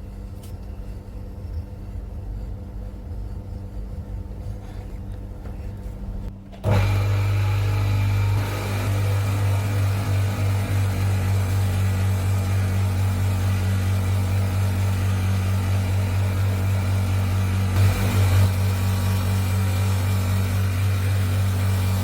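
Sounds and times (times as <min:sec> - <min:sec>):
power tool motor humming: 0:06.6 - 0:22.0.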